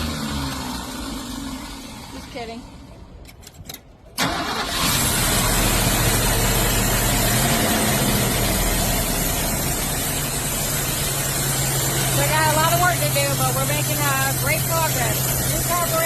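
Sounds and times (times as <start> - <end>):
car engine idling: 4.1 - 16.0.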